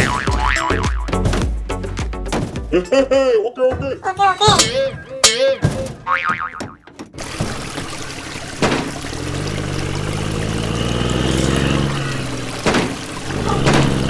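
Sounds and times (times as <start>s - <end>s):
short knocks: 0.0s - 2.8s, 3.6s - 9.3s, 12.5s - 14.0s
water pouring and trickling: 4.9s - 14.0s.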